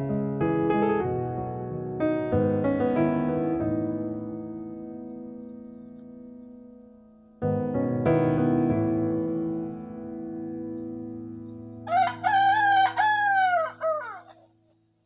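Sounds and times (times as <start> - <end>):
piano chords: 0.0 - 14.7
rooster crowing: 11.8 - 14.5.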